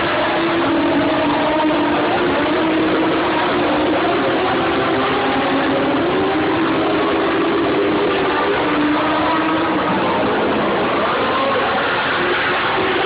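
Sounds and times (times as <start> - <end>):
race car engines running: 0.0 - 13.0.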